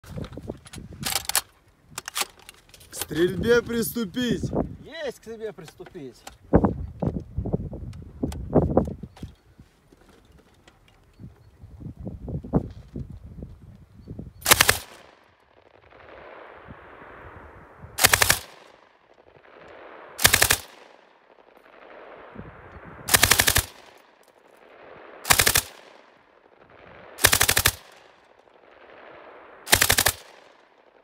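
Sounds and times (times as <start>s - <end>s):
machine gun firing bursts: 14.4s - 16.1s, 18.0s - 22.2s, 23.1s - 31.0s.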